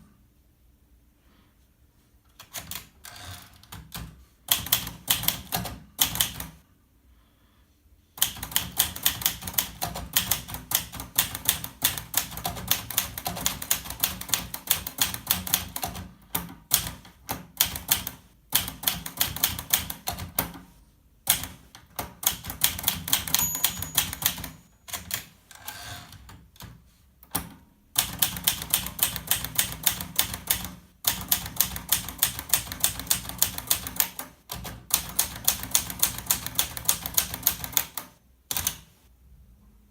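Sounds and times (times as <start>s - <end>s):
typewriter keystrikes: 8.2s - 20.5s, 21.3s - 25.3s, 26.6s - 38.8s.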